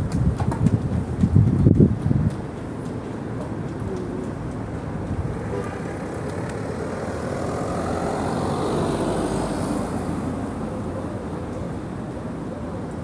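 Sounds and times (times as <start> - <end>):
city street traffic: 0.0 - 13.0
vehicle passing close by: 4.0 - 11.3.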